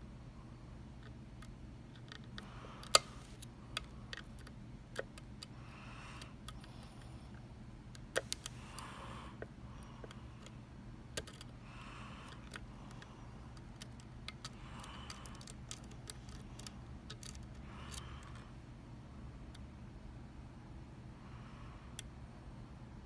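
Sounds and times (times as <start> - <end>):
low steady hum: 0.0 - 23.0
soft hiss: 2.5 - 3.6.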